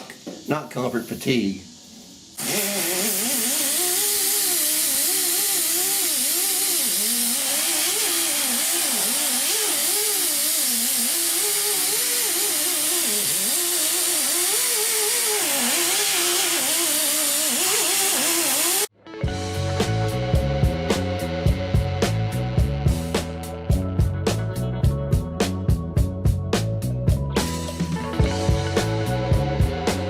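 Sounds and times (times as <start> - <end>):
power tool stripping paint: 2.4 - 18.9.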